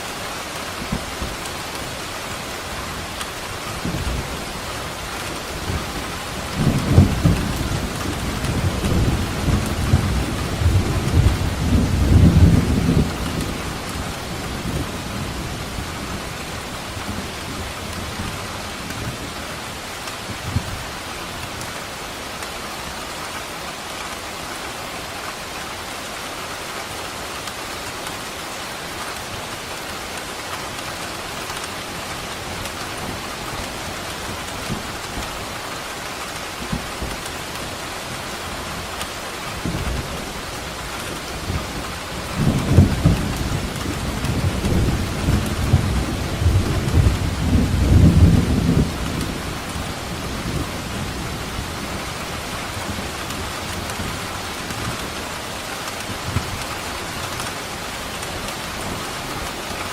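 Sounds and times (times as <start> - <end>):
heavy rain: 0.0 - 59.9
rolling thunder: 39.6 - 52.0.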